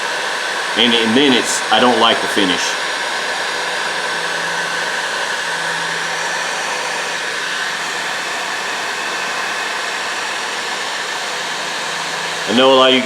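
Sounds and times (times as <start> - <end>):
heat gun blowing with whine: 0.0 - 13.0.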